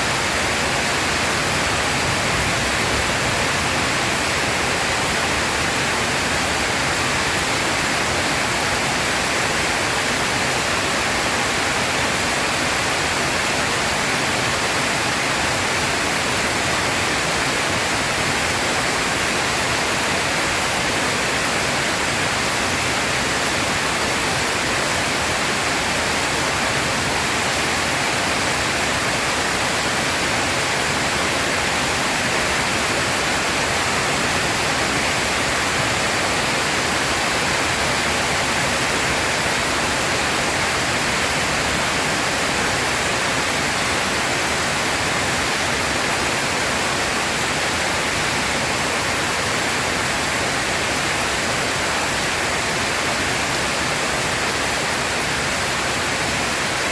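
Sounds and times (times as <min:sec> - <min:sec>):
heavy rain pouring: 0:00.0 - 0:11.2.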